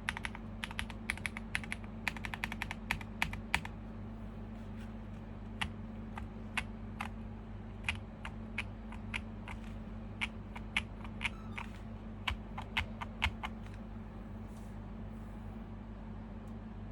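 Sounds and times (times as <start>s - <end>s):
mechanical keyboard typing: 0.0s - 3.7s, 7.8s - 13.8s
steady low hum: 0.0s - 16.9s.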